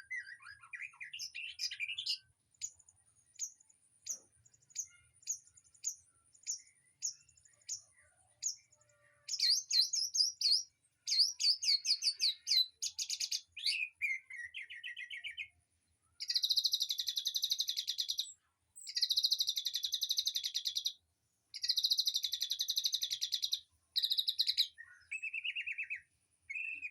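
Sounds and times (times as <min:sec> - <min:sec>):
songbirds chipping: 0:00.0 - 0:26.9.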